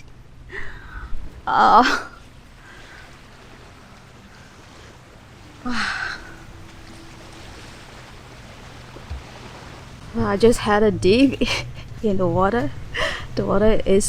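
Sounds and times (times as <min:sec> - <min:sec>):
wind: 0:00.0 - 0:14.0
calm sea water hiss: 0:02.0 - 0:10.0.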